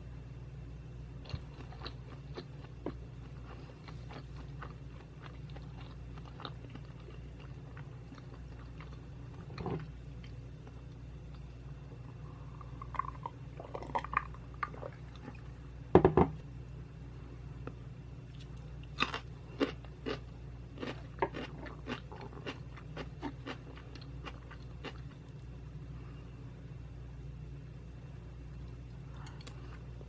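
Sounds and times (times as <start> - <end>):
close chewing with mouth smacks: 1.2 - 9.6, 20.8 - 25.4.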